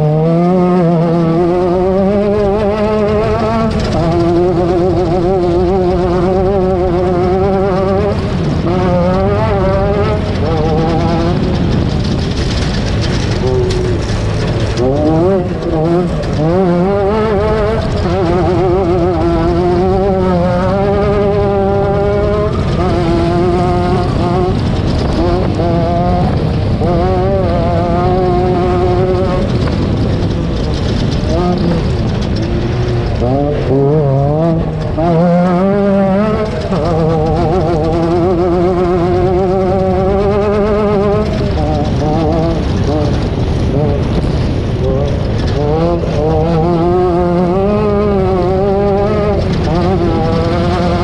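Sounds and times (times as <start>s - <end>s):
race car engine running hard: 0.0s - 51.0s
vehicle rumbling over rough ground: 0.0s - 51.0s.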